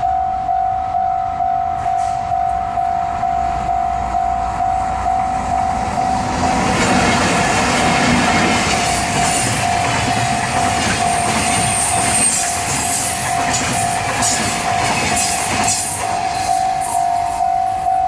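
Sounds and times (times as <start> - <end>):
bell-like tone: 0.0 - 6.8, 9.5 - 18.0
train wheels clattering on rails: 5.6 - 17.9.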